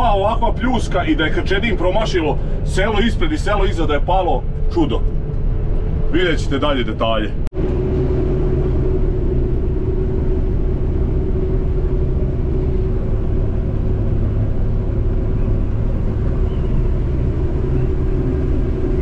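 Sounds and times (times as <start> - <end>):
combine harvester engine rumble: 0.0 - 19.0.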